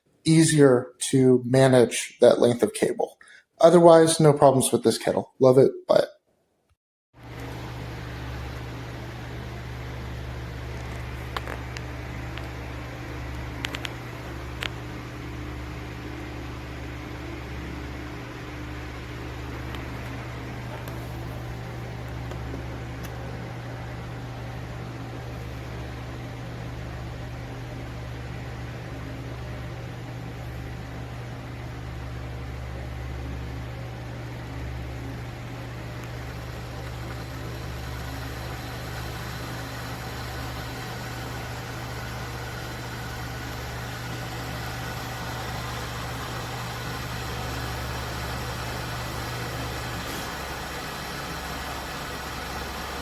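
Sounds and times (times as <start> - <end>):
kettle electrical hum: 7.2 - 53.0
water heating hiss: 35.7 - 53.0.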